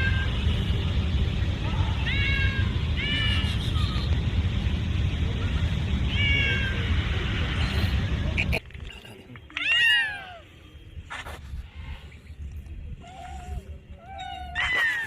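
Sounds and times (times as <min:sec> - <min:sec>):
steady low rumble: 0:00.0 - 0:09.5
cat meowing: 0:01.9 - 0:03.5, 0:06.1 - 0:06.8.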